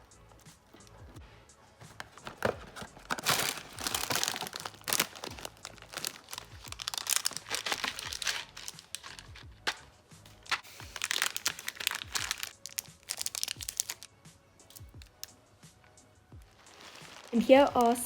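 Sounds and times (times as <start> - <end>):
plastic wrappers crinkling: 2.0 - 14.1, 16.5 - 18.0.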